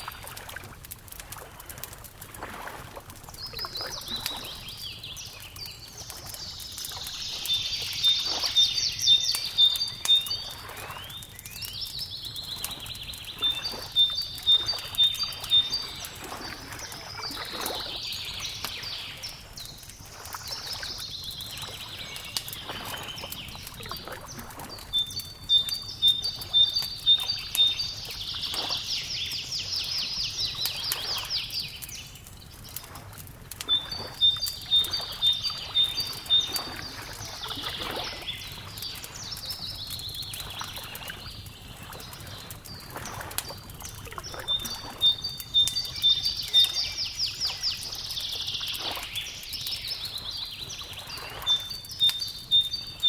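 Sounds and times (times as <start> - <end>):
wood fire crackling: 0.0 - 53.0
songbird trilling: 6.9 - 19.4, 33.8 - 41.5, 44.0 - 52.9.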